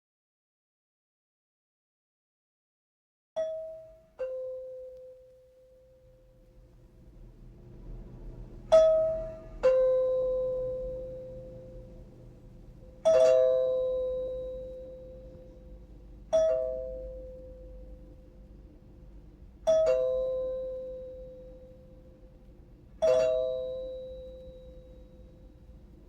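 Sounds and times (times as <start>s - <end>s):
two-tone door chime: 8.7s - 12.0s, 12.8s - 18.3s, 19.6s - 22.0s, 23.0s - 25.8s.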